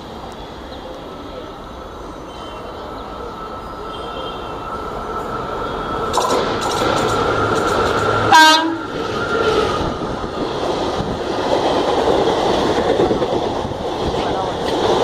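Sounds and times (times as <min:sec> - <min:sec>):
train wheels clattering over rails: 0:06.0 - 0:15.0
train horn blast: 0:08.2 - 0:08.9.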